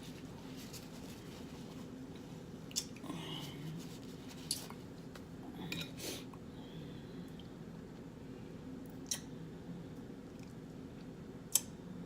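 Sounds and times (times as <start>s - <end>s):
faint low hum: 0.0s - 12.0s
soft wet squishes of chewing: 10.0s - 11.7s.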